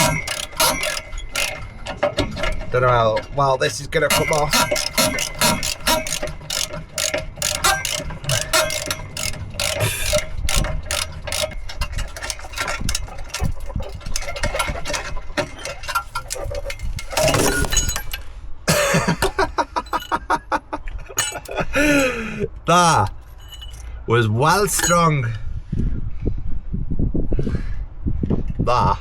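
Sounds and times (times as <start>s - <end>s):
rasping metal scrape: 0.0s - 18.2s, 21.2s - 23.9s, 24.6s - 25.1s
ratchet spanner clicking: 0.0s - 18.2s, 19.0s - 20.2s, 21.2s - 23.9s, 24.6s - 25.0s.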